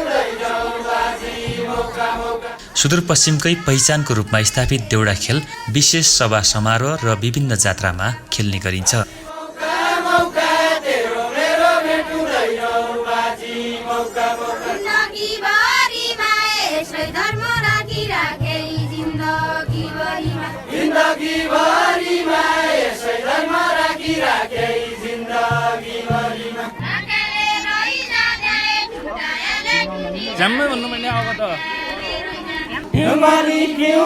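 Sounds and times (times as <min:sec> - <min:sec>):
low pulsing beat: 0:00.0 - 0:04.9
group singing folk song: 0:00.0 - 0:34.0.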